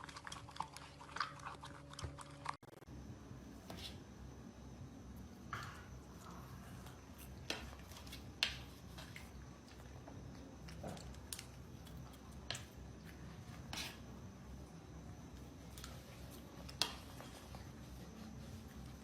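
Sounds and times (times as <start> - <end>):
dog eating crunches: 0.0 - 2.8.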